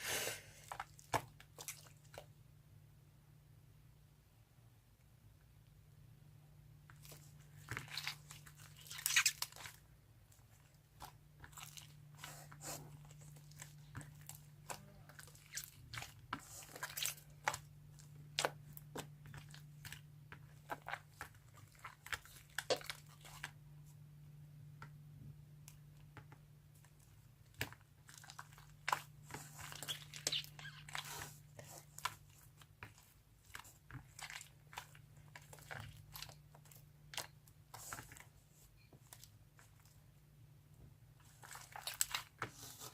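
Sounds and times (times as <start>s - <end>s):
slime crackling and popping: 6.9s - 9.9s.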